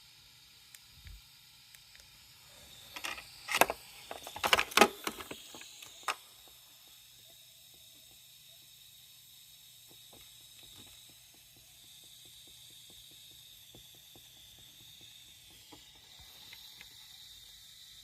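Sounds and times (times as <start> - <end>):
steady hiss: 0.0 - 18.0
thin high whine: 0.0 - 18.0
mechanical clicking: 2.7 - 6.6.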